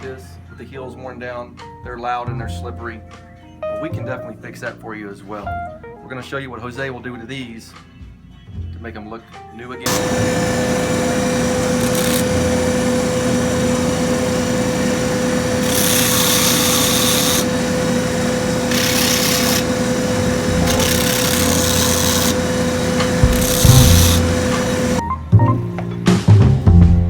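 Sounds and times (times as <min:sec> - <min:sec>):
grinding machine humming: 0:09.9 - 0:25.0
heel grinding hiss: 0:09.9 - 0:25.0.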